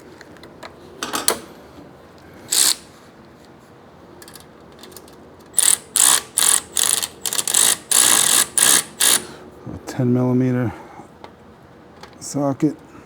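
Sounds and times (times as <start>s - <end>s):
socket ratchet clicking: 2.5s - 2.9s, 4.2s - 9.3s.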